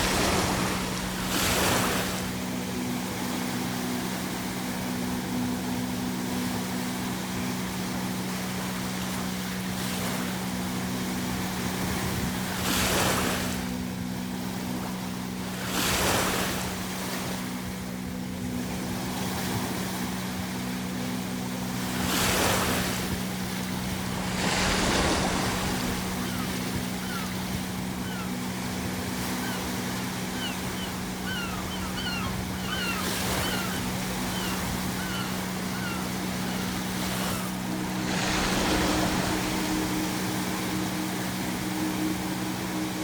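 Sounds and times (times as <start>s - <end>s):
ocean waves breaking on shore: 0.0s - 43.0s
steady low hum: 16.5s - 43.0s
seagull cries: 24.4s - 40.5s.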